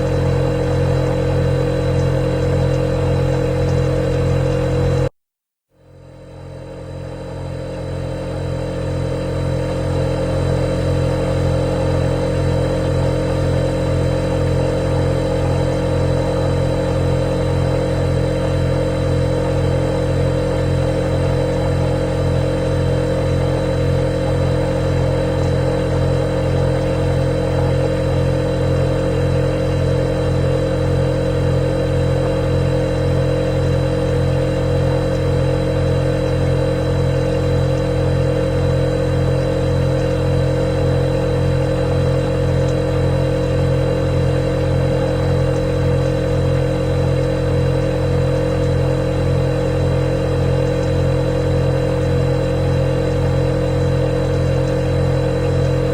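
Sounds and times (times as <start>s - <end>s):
refrigerator humming: 0.0s - 5.1s, 5.8s - 55.9s.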